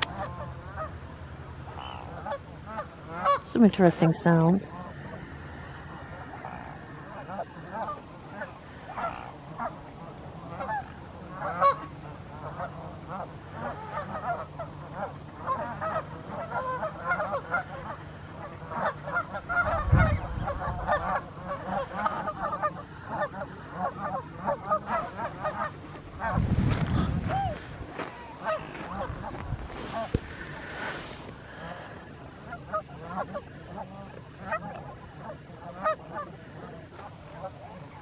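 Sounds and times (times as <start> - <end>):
waterfowl flock honking: 0.0 - 38.0
low rumbles: 19.5 - 33.0.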